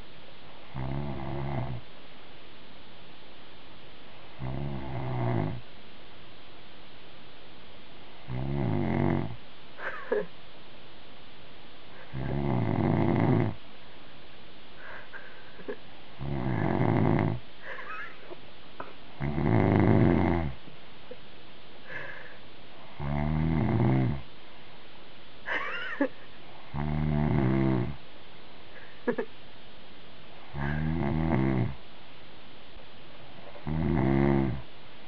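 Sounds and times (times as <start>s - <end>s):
man snoring: 0.7s - 1.8s, 4.4s - 5.6s, 8.3s - 9.4s, 12.1s - 13.6s, 16.2s - 17.4s, 19.2s - 20.6s, 22.9s - 24.2s, 26.7s - 28.0s, 30.5s - 31.8s, 33.6s - 34.6s.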